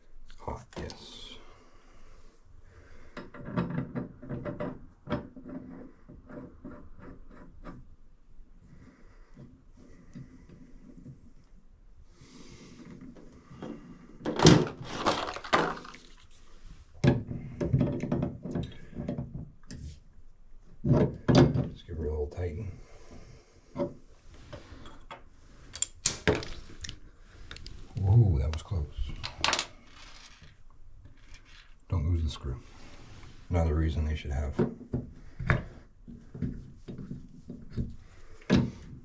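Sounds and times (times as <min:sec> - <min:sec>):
faucet parts and tools clattering: 0:24.8 - 0:27.6.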